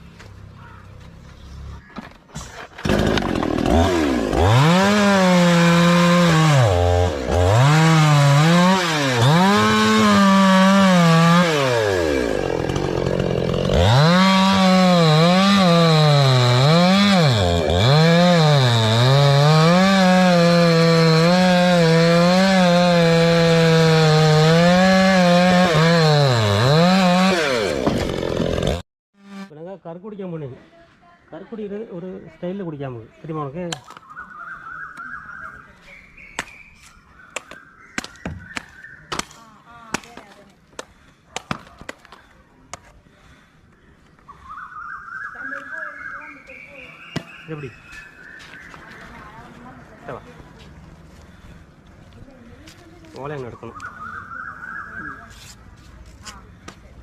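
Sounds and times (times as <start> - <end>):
chainsaw revving: 2.8 - 29.5.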